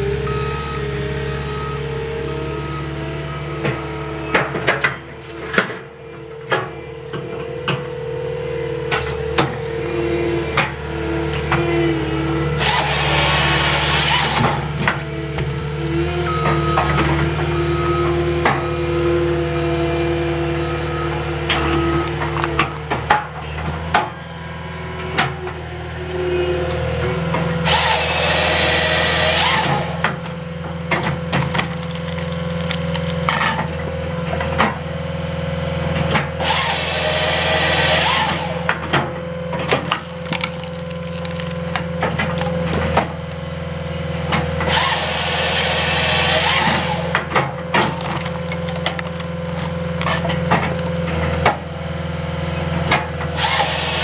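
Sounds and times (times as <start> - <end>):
engine and hydraulics humming: 0.0 - 54.0
saw cutting through log: 12.4 - 14.8, 27.6 - 30.2, 36.4 - 39.0, 44.6 - 51.6, 53.3 - 54.0
wood cracking and knocking: 30.9 - 33.8, 38.7 - 43.3, 46.6 - 51.6.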